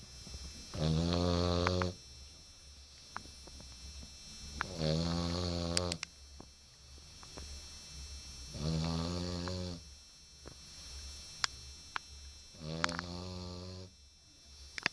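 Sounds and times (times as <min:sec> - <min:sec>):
person snoring: 0:00.7 - 0:02.0, 0:04.6 - 0:06.0, 0:08.5 - 0:09.9, 0:12.6 - 0:14.0.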